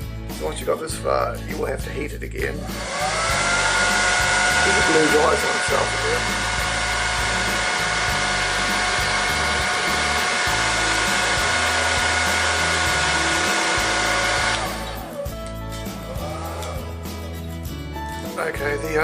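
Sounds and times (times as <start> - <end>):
hair dryer blowing with whine: 2.6 - 15.3.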